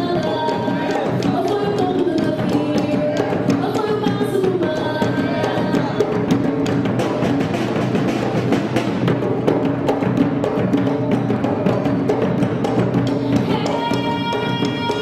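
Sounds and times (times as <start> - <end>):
people singing: 0.0 - 6.4, 13.2 - 15.0
hand percussion rhythm: 0.0 - 15.0.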